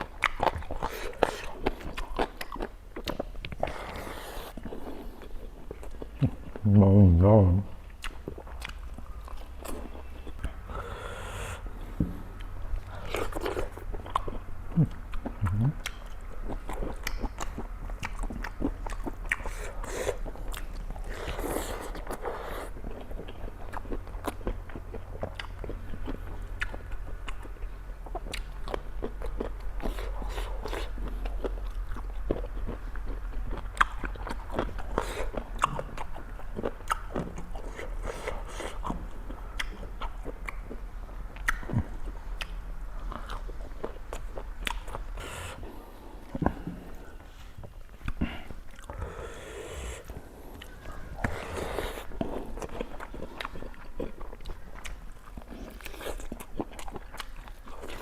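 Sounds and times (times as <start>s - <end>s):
person chewing crunchy food: 0.0s - 6.7s, 7.8s - 58.0s
steady low hum: 0.0s - 58.0s.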